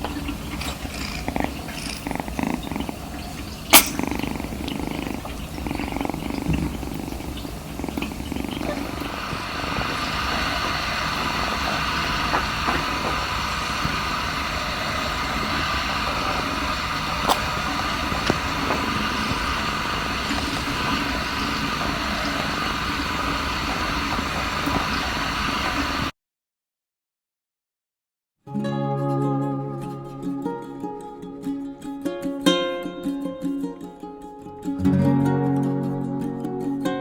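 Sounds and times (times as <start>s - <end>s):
faint clicks: 0.0s - 26.0s
kitten purring: 0.0s - 26.1s.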